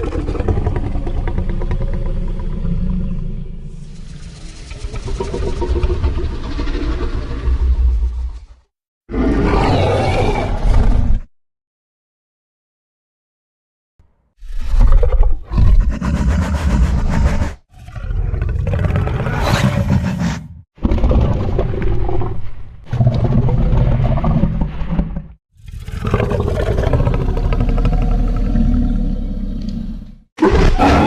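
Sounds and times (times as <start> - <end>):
deep creature roars: 0.0 - 3.8, 14.8 - 24.8, 25.6 - 31.0.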